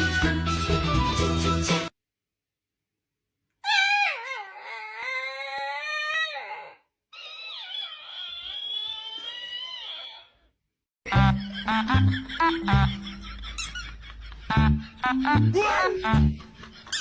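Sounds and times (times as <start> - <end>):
dog howling: 3.6 - 10.3.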